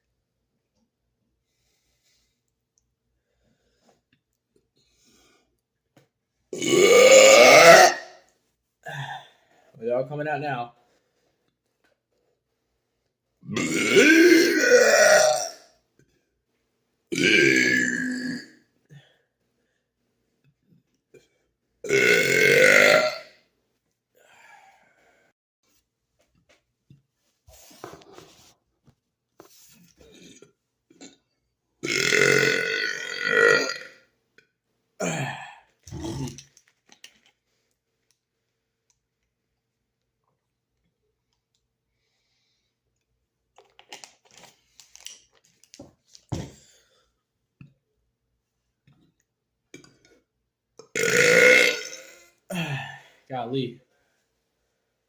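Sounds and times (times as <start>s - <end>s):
faint small noises: 0.0s - 17.2s, 33.0s - 55.0s
man belching: 6.6s - 8.1s, 13.4s - 15.6s, 17.1s - 18.5s, 21.8s - 23.3s, 31.8s - 34.0s, 35.0s - 36.4s, 50.8s - 53.0s.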